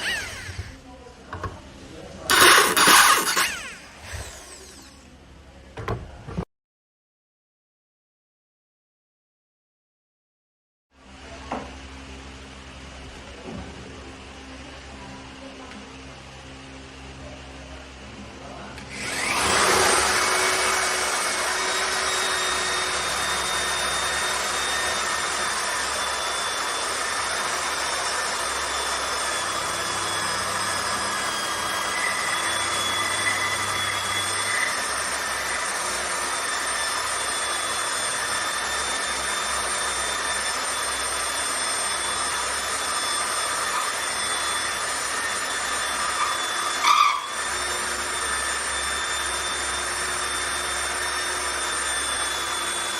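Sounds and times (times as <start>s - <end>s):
electric drill motor whining: 0.0s - 0.9s, 2.3s - 5.2s, 18.8s - 52.9s.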